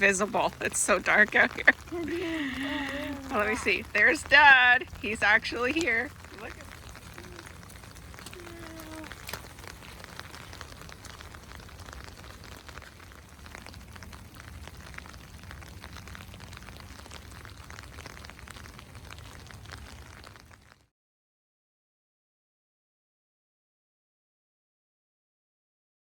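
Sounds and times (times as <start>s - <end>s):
low steady hum: 0.0s - 15.4s
rain falling: 0.0s - 20.9s.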